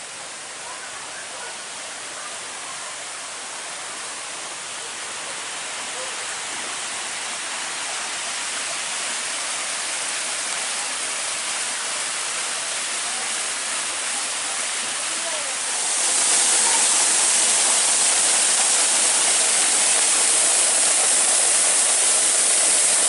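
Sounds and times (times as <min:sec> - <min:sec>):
waterfall rushing: 0:00.0 - 0:23.0.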